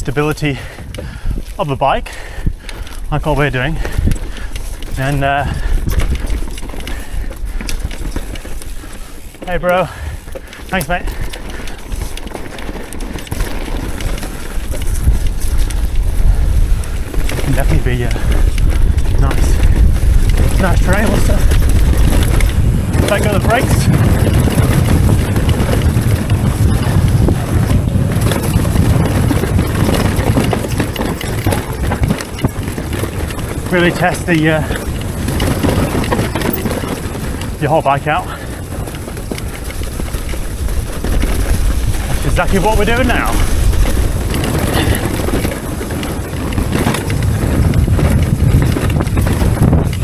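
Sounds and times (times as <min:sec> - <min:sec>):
bike tyre noise: 0:00.0 - 0:50.0
wind rushing over microphone: 0:00.0 - 0:50.0
small knocks from bike: 0:10.2 - 0:50.0.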